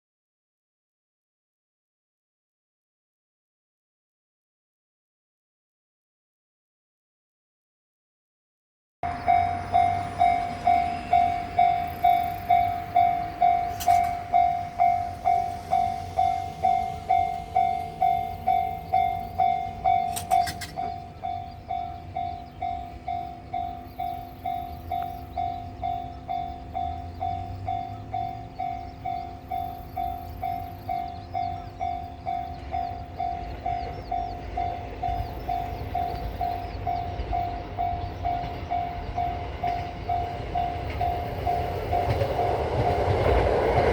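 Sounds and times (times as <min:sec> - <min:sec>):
level crossing warning bell: 0:09.0 - 0:43.9
train rumbling past: 0:09.0 - 0:43.9.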